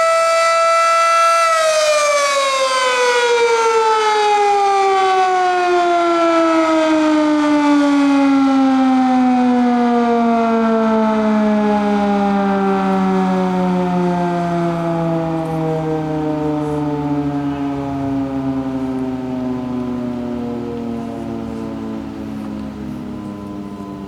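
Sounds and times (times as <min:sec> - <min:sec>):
warning siren winding down: 0:00.0 - 0:24.0.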